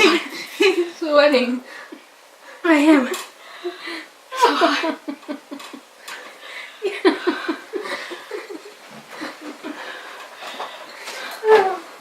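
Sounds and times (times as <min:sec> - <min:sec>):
people laughing: 0:04.3 - 0:05.8, 0:06.8 - 0:10.1.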